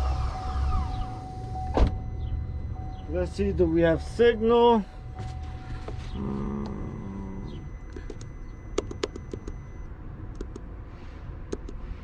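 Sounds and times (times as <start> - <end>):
car engine idling: 0.0 - 10.6
sharp clicks: 7.9 - 9.6, 10.3 - 10.7, 11.5 - 11.8.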